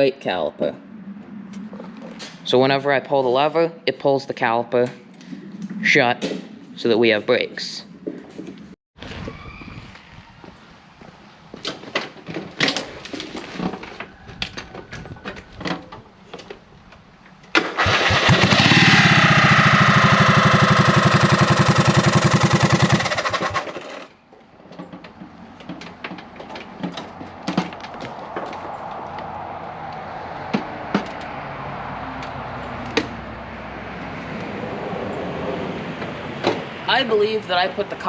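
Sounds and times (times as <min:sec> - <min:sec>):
lawn mower engine running: 0:17.4 - 0:24.1.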